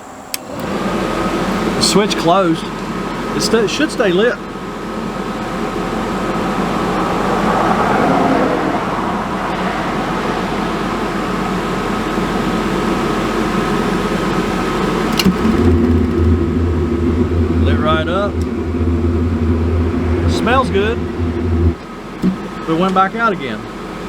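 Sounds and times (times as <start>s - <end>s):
furnace blower fan running: 0.0s - 24.0s
highway traffic noise: 0.0s - 24.0s
faint steady tone: 15.4s - 22.8s.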